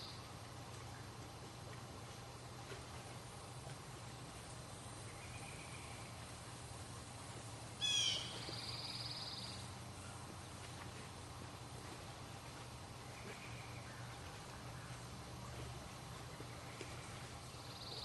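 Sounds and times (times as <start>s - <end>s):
faint low hum: 0.0s - 18.0s
songbird call and buzzy trill: 7.8s - 9.7s.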